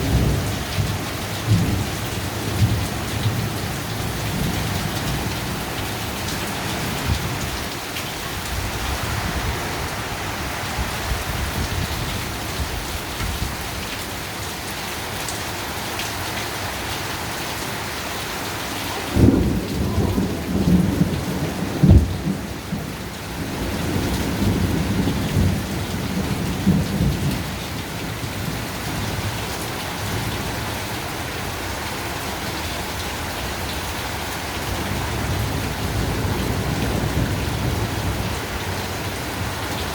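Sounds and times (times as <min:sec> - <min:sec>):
low thunder rumble: 0:00.0 - 0:07.8, 0:18.9 - 0:29.4
heavy rain falling: 0:00.0 - 0:39.9
thunder cracks: 0:19.0 - 0:22.9.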